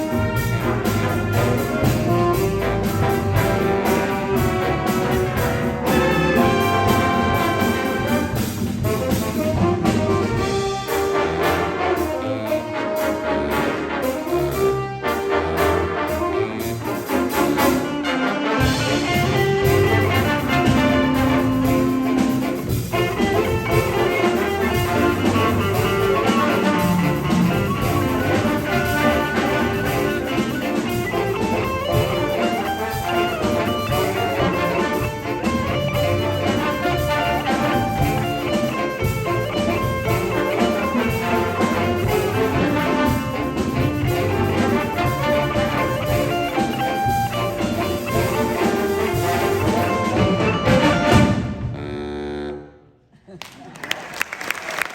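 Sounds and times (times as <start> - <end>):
big band jazz music: 0.0 - 52.9.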